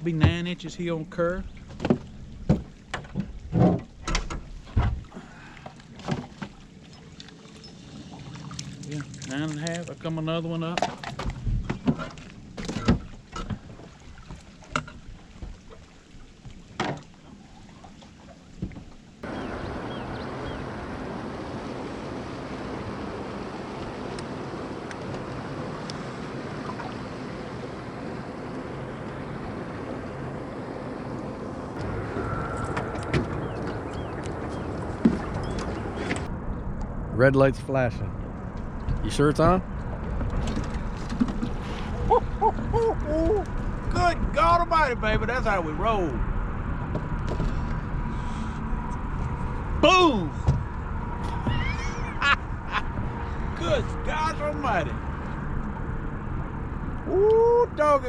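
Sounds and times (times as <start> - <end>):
water rushing: 0.0 - 58.0
hollow knocks in boat: 1.6 - 5.1, 16.7 - 17.1, 33.1 - 36.3, 38.8 - 41.9, 46.9 - 47.8, 50.4 - 51.9
boat motor running: 18.6 - 36.9, 38.1 - 58.0
wind rushing: 31.8 - 37.2.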